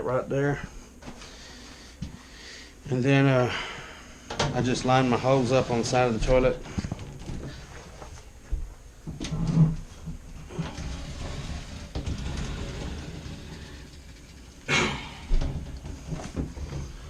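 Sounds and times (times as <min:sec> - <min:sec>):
rustling and scraping: 0:04.3 - 0:17.0.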